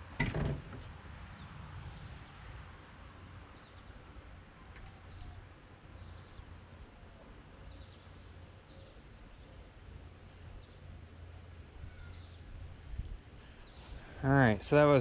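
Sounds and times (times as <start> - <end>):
bird chirping: 5.0 - 6.6, 7.6 - 9.6, 11.9 - 12.5, 13.5 - 14.1.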